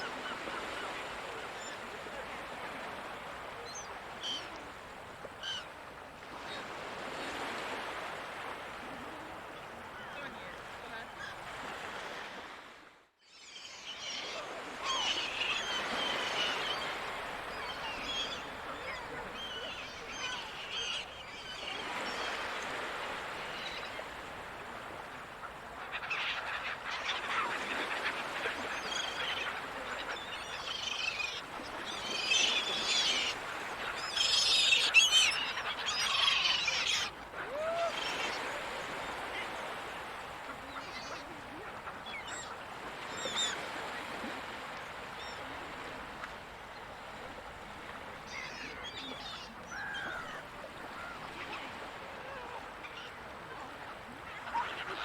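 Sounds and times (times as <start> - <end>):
gulls calling: 13.4 - 45.7, 47.8 - 53.4.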